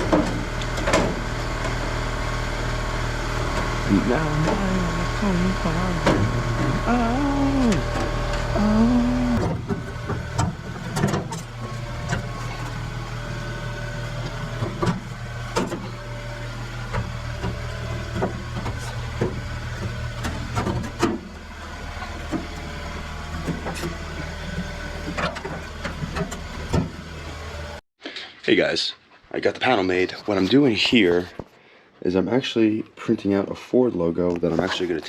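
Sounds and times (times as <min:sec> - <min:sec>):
steady low hum: 0:00.0 - 0:27.8.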